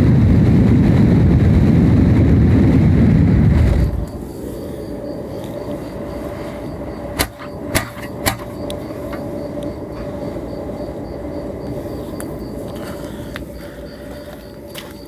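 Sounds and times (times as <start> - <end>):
dryer exhaust air rushing: 0.0 - 15.0.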